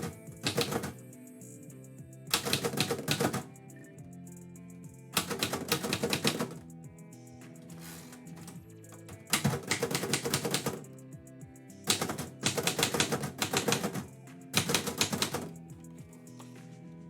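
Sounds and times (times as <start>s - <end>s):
typewriter keys clacking: 0.0s - 1.0s, 2.3s - 3.5s, 5.2s - 6.6s, 8.4s - 10.8s, 11.9s - 15.5s
soft background music: 0.0s - 17.0s.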